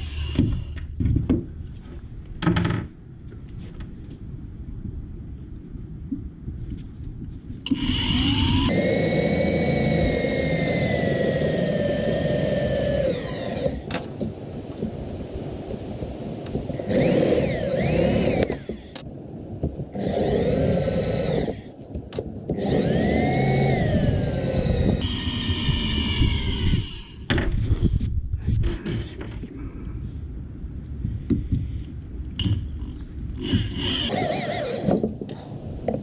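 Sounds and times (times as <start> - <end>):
electric drill drilling wood: 7.7 - 13.9, 16.8 - 19.0, 20.0 - 21.7, 22.5 - 27.3, 33.4 - 35.1.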